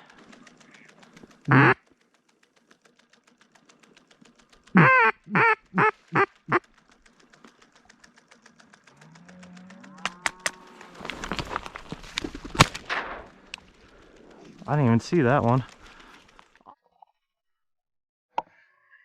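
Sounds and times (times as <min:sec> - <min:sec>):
faint rapid ticking: 0:00.0 - 0:16.6
duck quacking: 0:00.6 - 0:01.8, 0:04.7 - 0:06.7.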